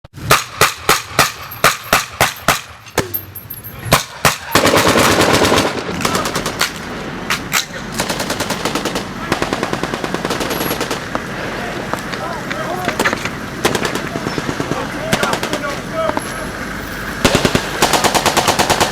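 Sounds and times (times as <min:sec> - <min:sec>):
machine-gun fire: 0:03.9 - 0:18.9.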